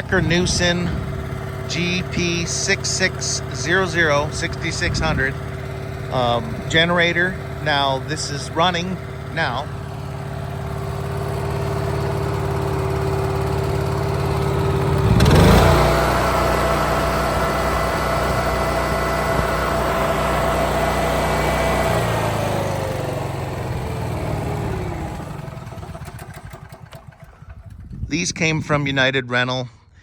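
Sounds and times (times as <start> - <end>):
portable generator running: 0.0 - 29.0.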